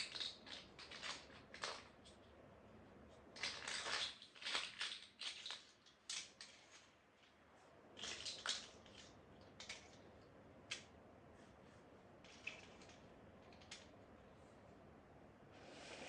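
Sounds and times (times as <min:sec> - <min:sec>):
plastic bricks clicking and rattling: 0:00.0 - 0:02.2, 0:03.4 - 0:06.6.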